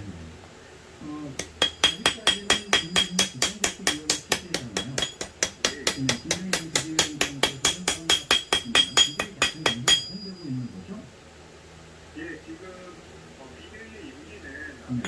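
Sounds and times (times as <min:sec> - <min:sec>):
hammer striking steel on anvil: 0:01.4 - 0:10.5.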